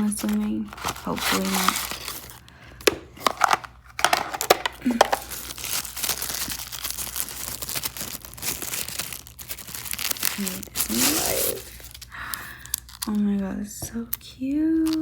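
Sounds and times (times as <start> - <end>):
packaging crinkling and tearing: 0.0 - 13.4, 14.7 - 15.0.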